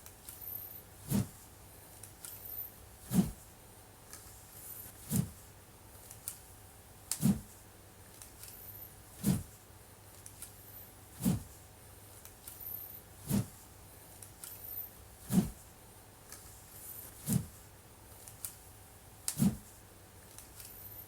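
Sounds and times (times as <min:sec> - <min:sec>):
wooden sword swishing through air: 0:01.0 - 0:01.4, 0:03.1 - 0:03.4, 0:05.0 - 0:05.4, 0:07.1 - 0:07.5, 0:09.2 - 0:09.5, 0:11.2 - 0:11.5, 0:13.2 - 0:13.6, 0:15.2 - 0:15.6, 0:17.1 - 0:17.6, 0:19.3 - 0:19.7.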